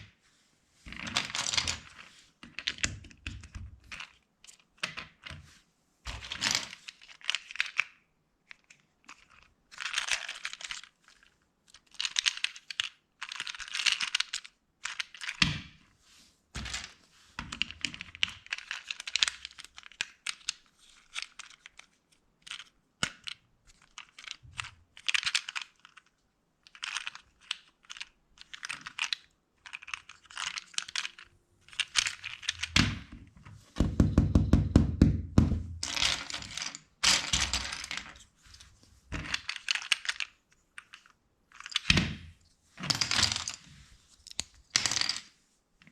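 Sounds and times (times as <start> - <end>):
plastic bricks clicking together: 6.4 - 15.6, 17.4 - 33.0, 39.1 - 42.1
heavier knocks: 33.8 - 35.8.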